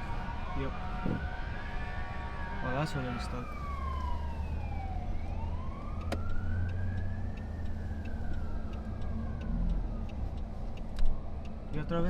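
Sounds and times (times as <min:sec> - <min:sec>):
low vehicle rumble: 0:00.0 - 0:12.0
siren wailing: 0:00.0 - 0:12.0
faint regular ticking: 0:06.4 - 0:12.0.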